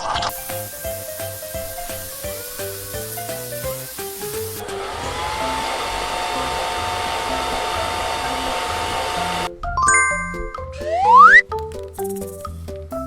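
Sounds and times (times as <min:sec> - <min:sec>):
background music: 0:00.0 - 0:13.0
hair dryer blowing: 0:00.4 - 0:09.5.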